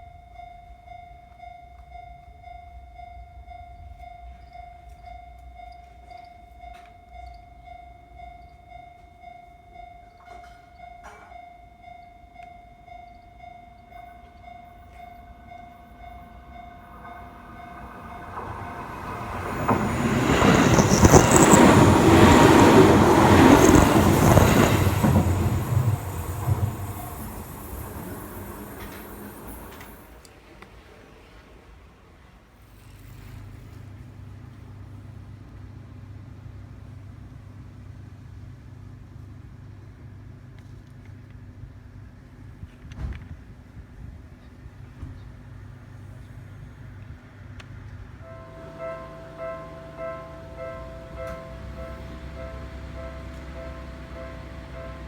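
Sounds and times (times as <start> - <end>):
level-crossing warning bell: 0.0 - 30.1, 48.2 - 55.0
electric train running: 13.8 - 30.4, 48.2 - 55.0.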